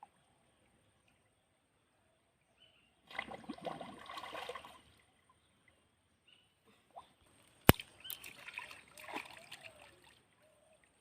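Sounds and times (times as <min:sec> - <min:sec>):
water splashing and sloshing: 0:03.1 - 0:05.2, 0:06.8 - 0:10.5.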